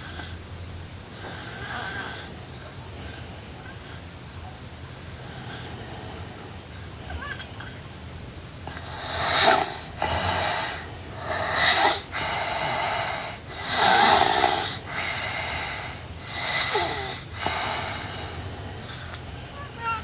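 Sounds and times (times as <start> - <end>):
girl snoring: 8.7 - 20.0.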